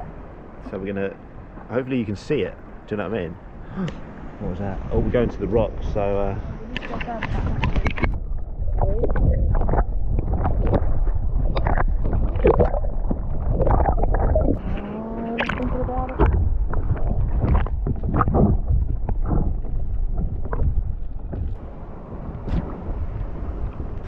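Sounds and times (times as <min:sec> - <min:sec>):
wind rumble on microphone: 0:00.0 - 0:24.0
paddle splashing in water: 0:06.8 - 0:24.0.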